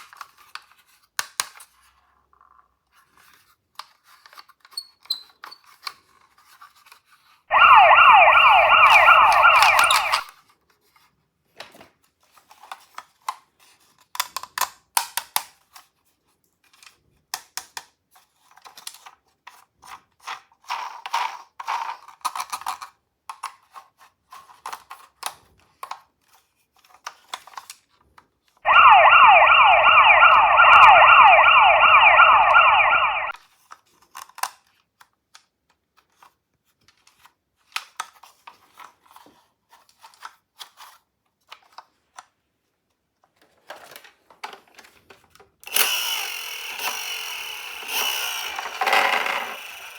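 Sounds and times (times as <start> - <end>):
toy siren warbling wail: 7.5 - 10.3, 28.7 - 33.3, 48.2 - 49.9.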